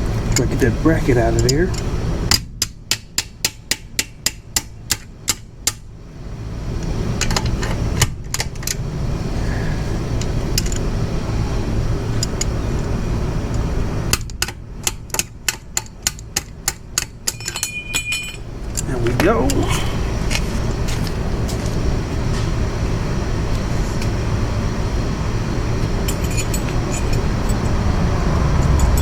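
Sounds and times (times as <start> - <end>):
steady low rumble: 0.0 - 29.0
socket ratchet clicking: 14.1 - 18.1.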